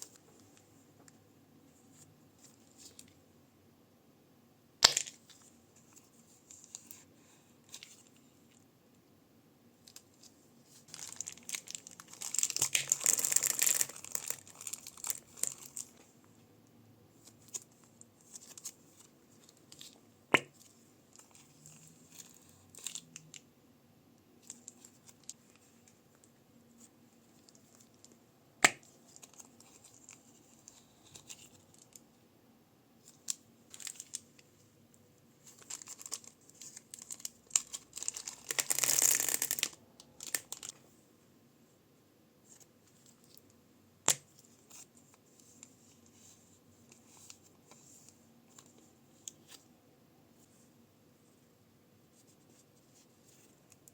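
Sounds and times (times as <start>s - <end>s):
slime and plastic crinkling: 4.8s - 8.2s, 9.8s - 16.1s, 24.4s - 26.0s, 27.3s - 32.0s, 33.0s - 34.5s, 35.4s - 40.9s.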